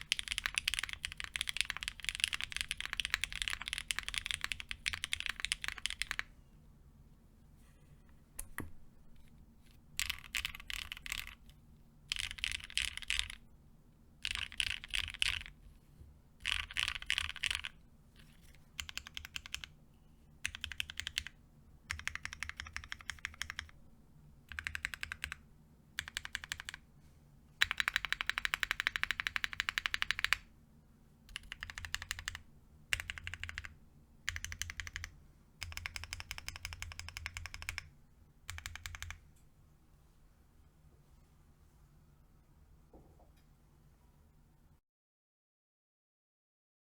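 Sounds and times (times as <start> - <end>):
mechanical keyboard typing: 0.0 - 6.3, 10.0 - 13.4, 14.2 - 15.6, 16.4 - 19.7, 20.4 - 23.8, 24.5 - 25.4, 26.0 - 26.8, 27.6 - 30.5, 31.3 - 37.9, 38.5 - 39.2.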